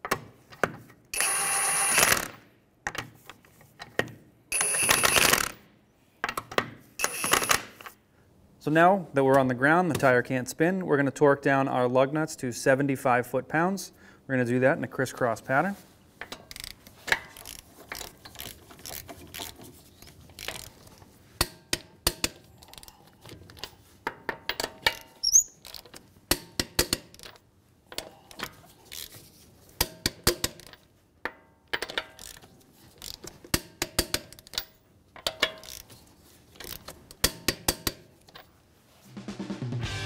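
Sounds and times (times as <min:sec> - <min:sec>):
torque wrench ratcheting and clicking: 0:16.4 - 0:19.6, 0:20.2 - 0:20.8, 0:32.1 - 0:35.9.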